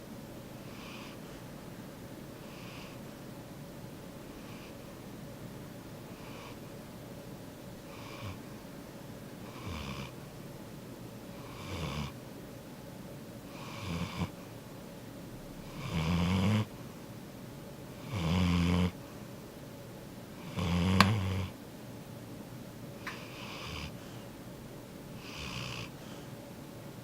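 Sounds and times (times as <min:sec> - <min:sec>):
dog snoring: 0:00.6 - 0:01.2, 0:02.4 - 0:03.0, 0:04.4 - 0:04.8, 0:06.1 - 0:06.6, 0:07.9 - 0:08.5, 0:09.4 - 0:10.2, 0:11.3 - 0:12.2, 0:13.5 - 0:14.4, 0:15.6 - 0:16.7, 0:17.9 - 0:19.0, 0:20.4 - 0:21.6, 0:23.1 - 0:24.2, 0:25.2 - 0:26.2.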